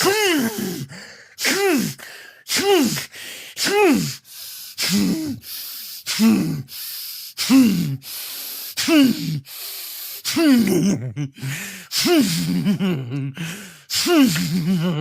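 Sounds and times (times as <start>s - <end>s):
sharp gasping breaths: 0.0s - 10.7s, 11.4s - 15.0s
man sneezing: 0.0s - 12.9s, 13.8s - 15.0s.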